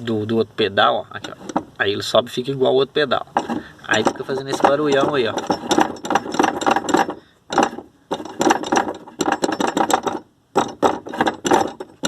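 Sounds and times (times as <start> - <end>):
pedal linkage rattling and scraping: 1.1 - 1.8, 3.2 - 12.0.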